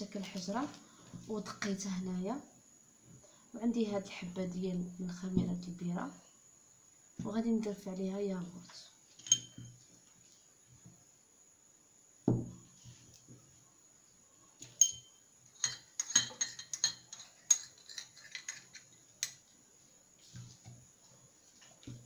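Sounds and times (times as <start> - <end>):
spoon clinking against dish: 9.2 - 9.7, 14.7 - 18.6
dull knock: 12.3 - 12.6.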